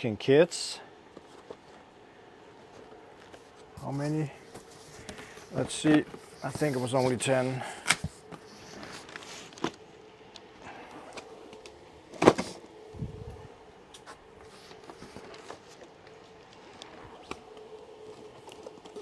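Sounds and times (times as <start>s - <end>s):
faint steady hum: 0.0s - 19.0s
cardboard boxes tapping and rustling: 2.7s - 9.8s, 12.1s - 12.6s.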